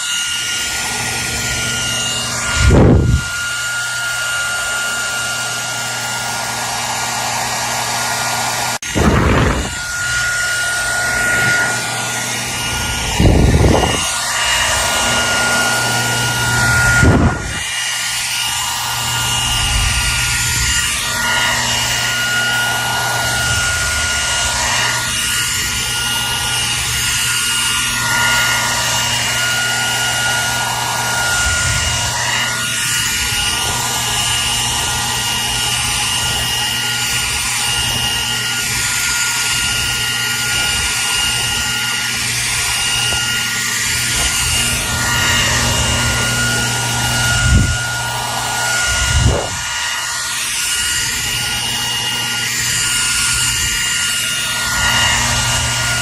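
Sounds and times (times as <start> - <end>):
hair dryer running: 0.0 - 56.0
low rumbles: 18.9 - 21.8.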